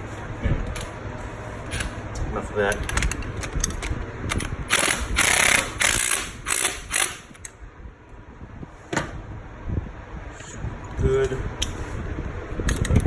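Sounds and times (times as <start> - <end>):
ratchet wrench clicking: 2.8 - 7.5.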